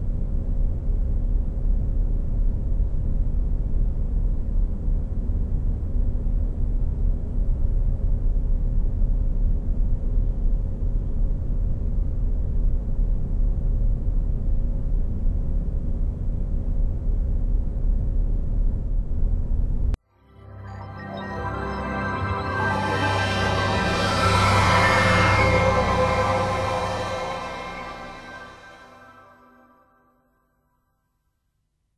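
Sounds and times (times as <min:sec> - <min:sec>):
steady low rumble: 0:11.8 - 0:29.7
ambient electronic drone music: 0:20.1 - 0:30.2.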